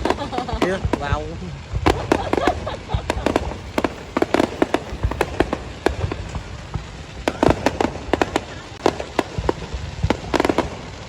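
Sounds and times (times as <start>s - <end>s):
fireworks bangs and crackles: 0.0s - 11.0s
low rumble: 0.0s - 11.0s.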